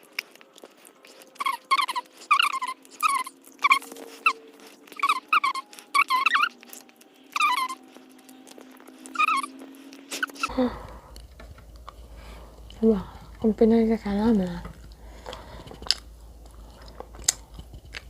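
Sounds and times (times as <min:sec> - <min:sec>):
faint steady hum: 0:00.0 - 0:18.0
animal high-pitched cries: 0:01.2 - 0:10.5.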